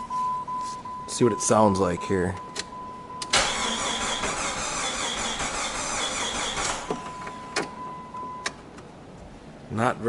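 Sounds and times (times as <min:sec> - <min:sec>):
electronic warning chime: 0:00.0 - 0:03.2, 0:07.0 - 0:08.5
engine starter cranking: 0:03.2 - 0:07.7.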